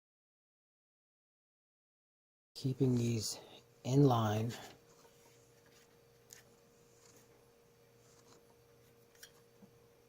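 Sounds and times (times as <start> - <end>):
faint steady hum: 2.6 - 10.0.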